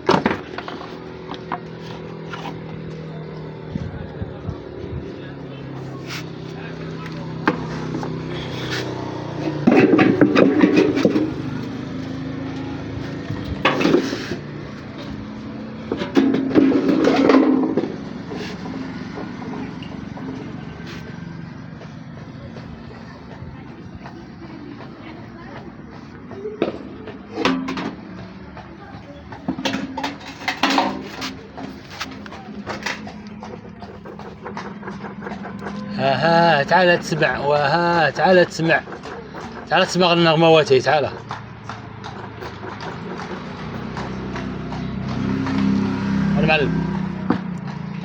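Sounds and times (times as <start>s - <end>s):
sharp knocks and clatters: 0.0s - 3.0s, 9.2s - 12.3s, 12.9s - 22.7s, 25.6s - 35.9s.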